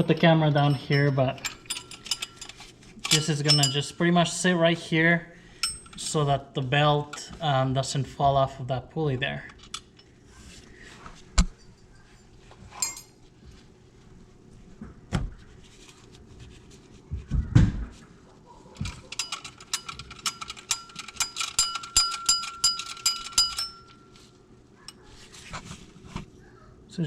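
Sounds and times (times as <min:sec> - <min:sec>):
metal tools knocking and clinking: 0:00.6 - 0:03.9, 0:11.4 - 0:13.2, 0:18.8 - 0:24.1
ringing metallic clicks: 0:00.6 - 0:03.9, 0:19.1 - 0:24.1.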